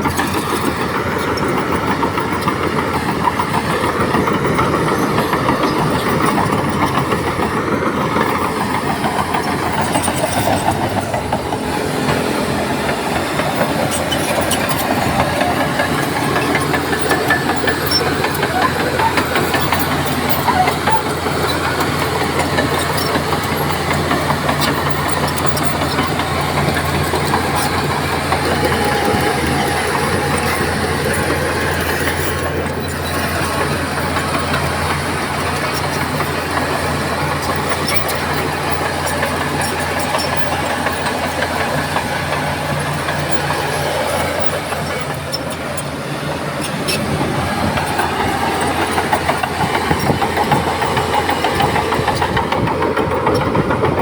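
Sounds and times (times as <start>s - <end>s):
bulldozer diesel engine: 0.0s - 54.0s
steel tracks rattling and clanking: 0.0s - 54.0s.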